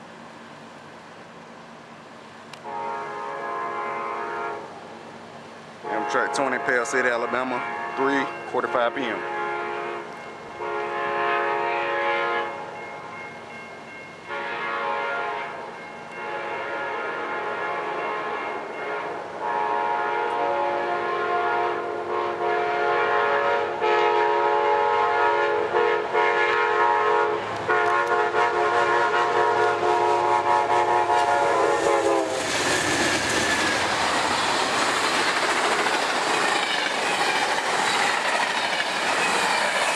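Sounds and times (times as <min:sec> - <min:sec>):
train rumbling and clattering by: 0:00.0 - 0:39.9
locomotive air horn blasts: 0:02.6 - 0:04.7, 0:05.8 - 0:12.7, 0:14.3 - 0:32.5.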